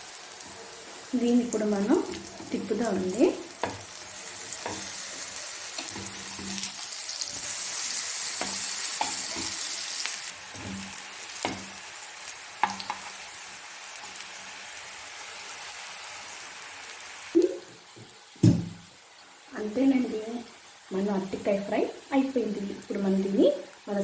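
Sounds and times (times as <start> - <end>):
slices sizzling in oil: 0.0 - 24.0
spatula scraping a pan: 2.1 - 11.7.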